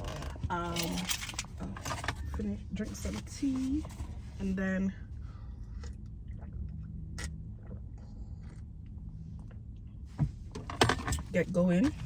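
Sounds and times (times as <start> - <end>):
low hum: 0.0 - 12.0
person sipping a drink: 5.6 - 9.0.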